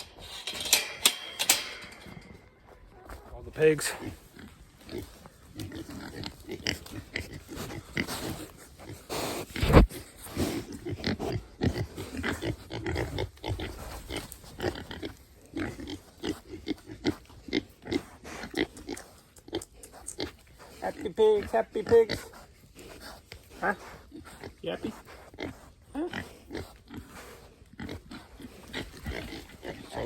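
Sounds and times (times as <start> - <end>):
pigs grunting: 3.0 - 30.0.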